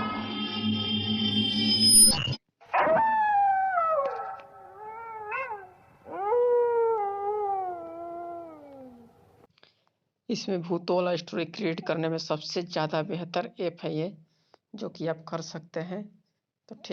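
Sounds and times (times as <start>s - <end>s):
animal howls: 2.8s - 9.3s.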